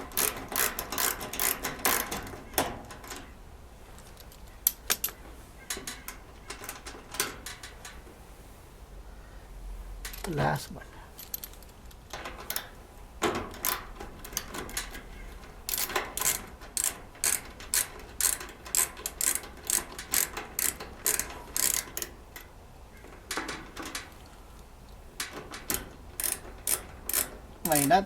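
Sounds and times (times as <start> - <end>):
nut driver ratchet clicking: 0.0 - 2.3, 13.5 - 15.0, 15.7 - 22.5, 25.2 - 28.0.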